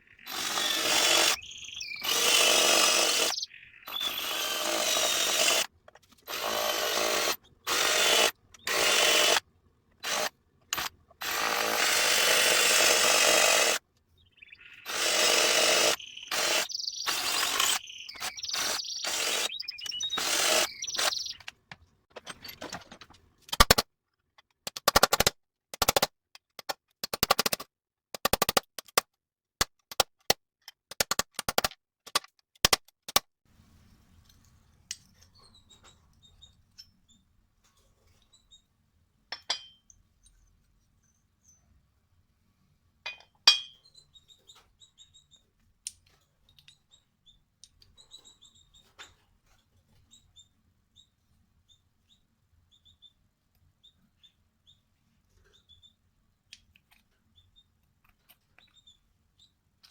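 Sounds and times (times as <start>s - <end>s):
power tool on metal: 0.3s - 5.7s, 6.3s - 9.4s, 10.0s - 13.8s, 14.9s - 21.3s
sharp clicks and taps: 23.5s - 33.3s.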